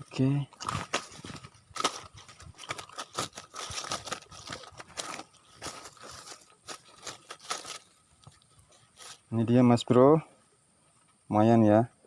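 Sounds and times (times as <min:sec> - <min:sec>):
rustling and crackling handling noise: 0:00.0 - 0:09.4.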